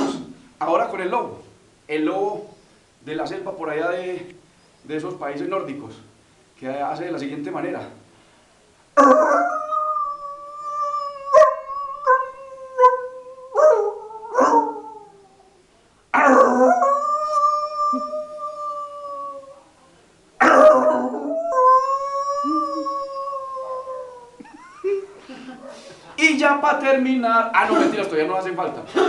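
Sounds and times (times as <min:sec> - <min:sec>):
man imitating wolf howls: 0:09.0 - 0:15.6, 0:16.2 - 0:19.7, 0:20.4 - 0:24.4.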